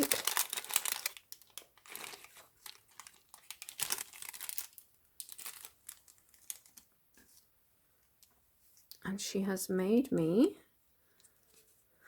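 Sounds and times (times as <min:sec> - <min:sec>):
paper bag crackling: 0:00.0 - 0:06.9.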